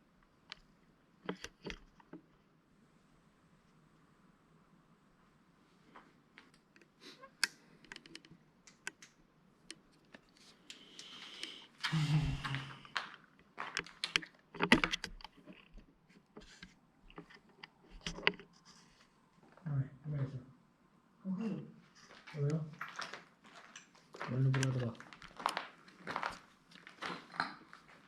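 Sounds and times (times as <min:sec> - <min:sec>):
small clicks and taps: 0:00.5 - 0:02.4, 0:06.4 - 0:11.6.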